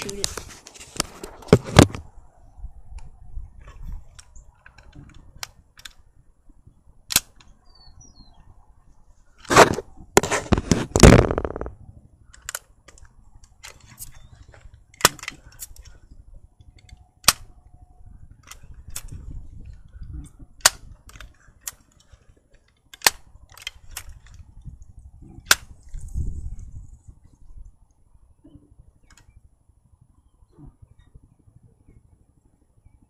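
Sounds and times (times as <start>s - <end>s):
sharp clicks: 7.1s - 7.7s, 12.3s - 16.0s, 16.6s - 17.6s, 18.4s - 24.4s
pellet rifle clacks: 12.3s - 16.0s.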